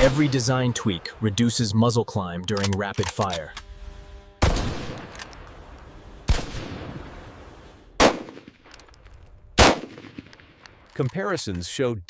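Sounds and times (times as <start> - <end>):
gunshots with ringing echo: 6.3 - 7.3, 8.0 - 8.7, 9.6 - 10.6.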